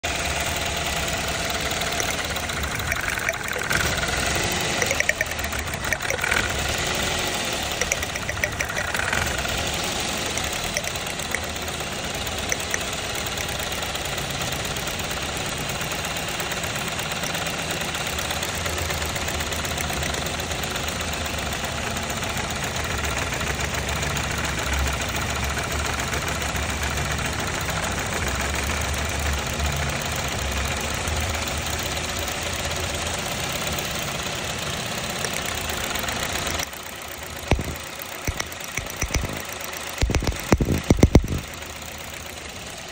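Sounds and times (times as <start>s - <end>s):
car engine idling: 0.0s - 42.9s
short clicks and knocks: 1.8s - 6.8s, 7.7s - 9.6s, 37.4s - 41.5s.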